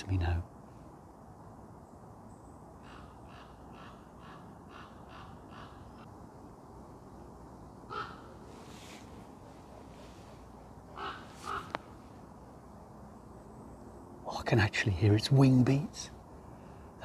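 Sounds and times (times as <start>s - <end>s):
loud raven croak: 2.8s - 6.1s, 7.9s - 8.4s, 10.9s - 12.0s
raven calling: 2.8s - 6.1s, 7.9s - 10.2s, 10.9s - 12.1s.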